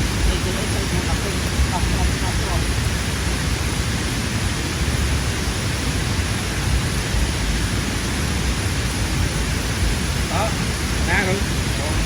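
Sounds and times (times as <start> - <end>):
low rumble: 0.0 - 12.0
steady rushing noise: 0.0 - 12.0.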